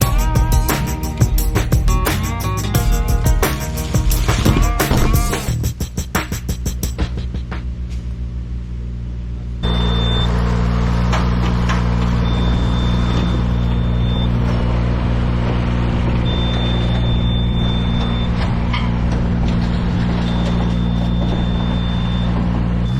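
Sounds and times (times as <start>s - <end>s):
high thin whine: 0.0s - 5.8s
engine running: 0.0s - 22.9s.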